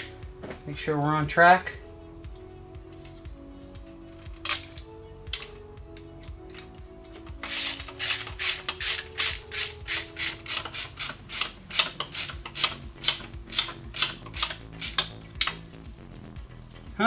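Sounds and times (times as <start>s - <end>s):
faint background music: 0.0s - 17.0s
hand ratchet clicking: 7.4s - 15.7s.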